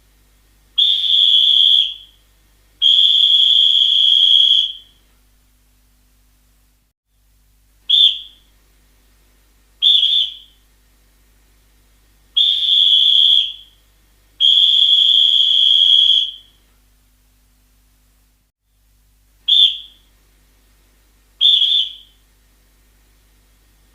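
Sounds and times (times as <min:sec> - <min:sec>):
referee's whistle blasts: 0:02.8 - 0:04.9, 0:09.8 - 0:10.6, 0:14.4 - 0:16.5, 0:19.5 - 0:20.0, 0:21.4 - 0:22.2.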